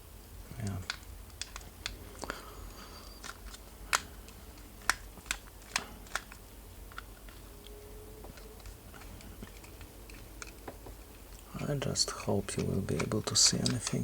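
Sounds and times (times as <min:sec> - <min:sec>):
plastic parts being handled: 0:00.6 - 0:14.0
screwdriver clicking and tapping: 0:12.5 - 0:14.0.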